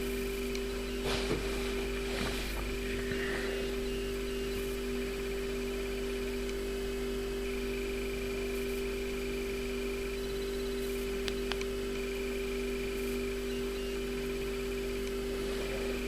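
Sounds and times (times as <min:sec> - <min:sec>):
electrical hum: 0:00.0 - 0:16.0
faint high whines: 0:00.0 - 0:16.0
brief clicks: 0:11.2 - 0:11.7.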